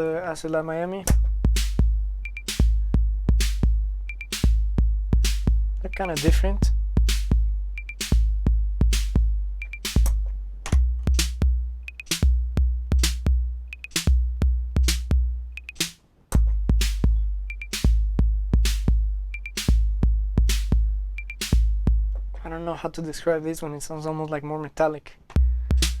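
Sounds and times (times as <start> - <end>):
low bass drum hits: 1.1 - 11.6, 16.4 - 17.3.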